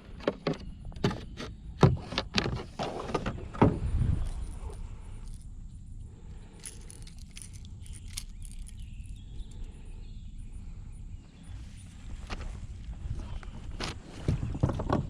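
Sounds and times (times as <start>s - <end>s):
wind rumble on microphone: 3.3s - 6.2s, 7.7s - 15.0s.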